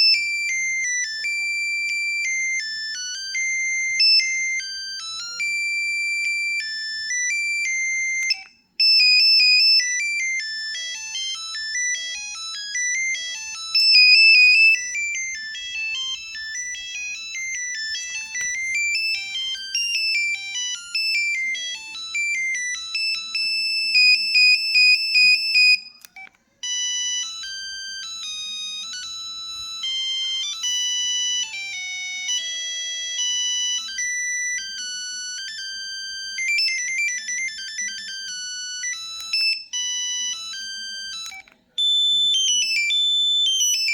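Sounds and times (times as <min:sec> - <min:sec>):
electronic phone ringtone melodies: 0:00.0 - 0:43.9.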